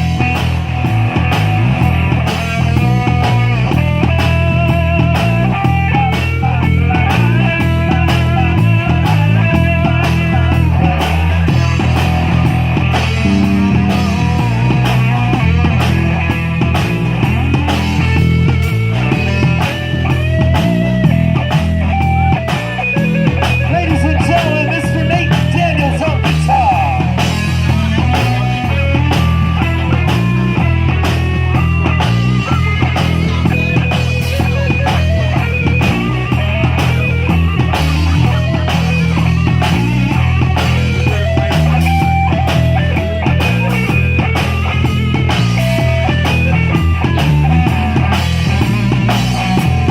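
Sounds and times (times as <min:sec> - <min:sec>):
bass and guitar: 0:00.0 - 0:49.9
drum kit beat: 0:00.0 - 0:49.9
wavering lead melody: 0:00.0 - 0:49.9.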